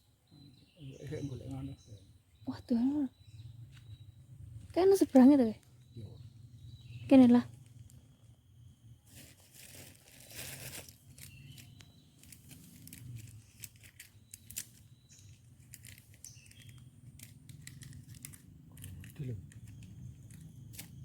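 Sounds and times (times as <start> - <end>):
faint rustling and crackling: 9.0 - 21.0.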